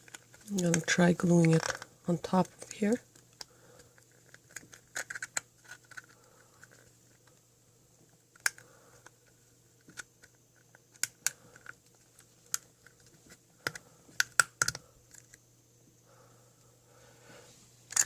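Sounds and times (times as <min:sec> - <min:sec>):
plastic pieces clicking and tapping: 0:02.5 - 0:07.4, 0:09.8 - 0:15.4.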